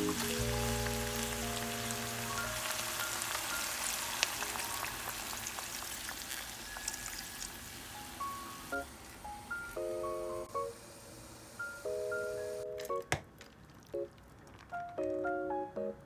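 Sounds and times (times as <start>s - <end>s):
soft background music: 0.0s - 5.8s, 6.6s - 13.2s, 13.9s - 16.0s
food sizzling in a pan: 0.0s - 12.6s.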